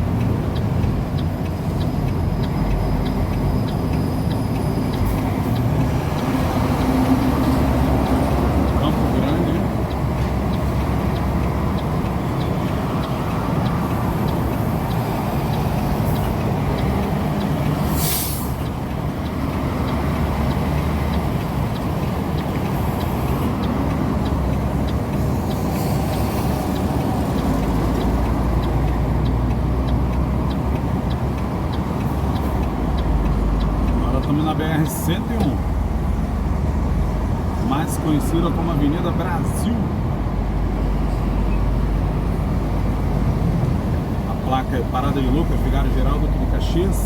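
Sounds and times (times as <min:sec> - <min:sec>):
faint regular ticking: 0:00.0 - 0:47.0
truck diesel engine and road rumble: 0:00.0 - 0:47.0
sharp air hiss: 0:17.9 - 0:18.6.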